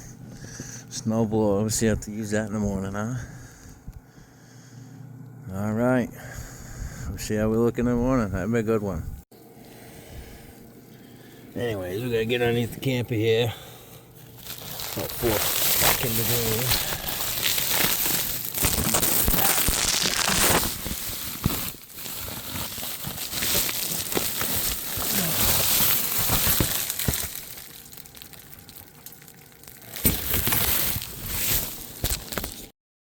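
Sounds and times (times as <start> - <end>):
footsteps crunching in dry snow: 14.4 - 28.4.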